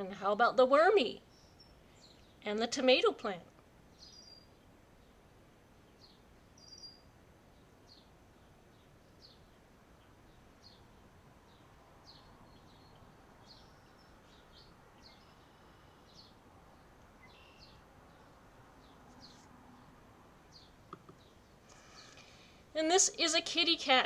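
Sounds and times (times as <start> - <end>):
outdoor background hiss: 0.0 - 24.0
small bird chirping: 4.0 - 4.6, 6.0 - 7.1, 8.7 - 22.5.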